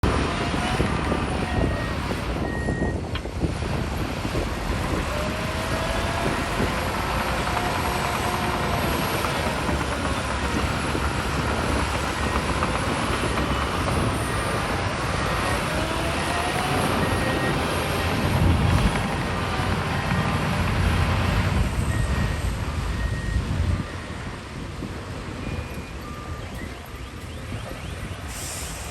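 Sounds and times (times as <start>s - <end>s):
diesel machinery engines: 0.0s - 28.9s
short high beeps: 1.6s - 3.1s.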